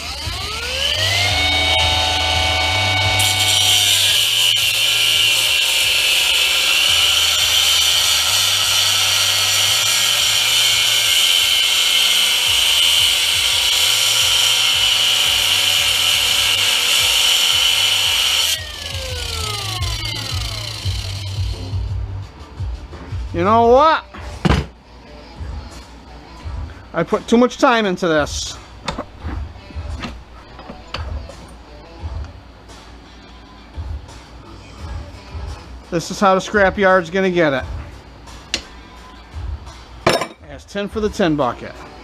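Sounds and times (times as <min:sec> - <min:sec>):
cutoff wheel grinding metal: 0:00.0 - 0:21.9.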